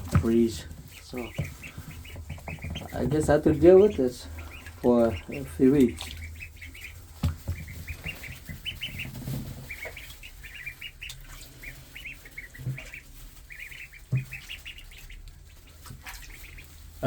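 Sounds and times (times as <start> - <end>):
soft thumps: 0.0 - 4.8, 7.1 - 10.1
ducklings peeping: 0.0 - 17.0.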